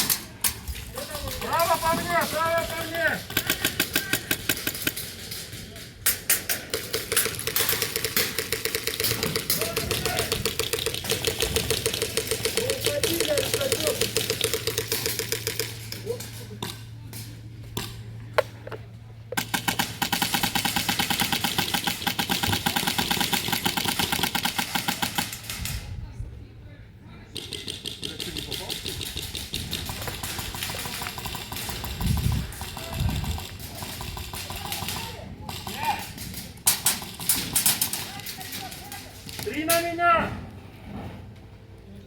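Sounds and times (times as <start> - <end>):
airsoft guns firing bursts: 0.0 - 16.8, 19.4 - 25.7, 27.3 - 39.3.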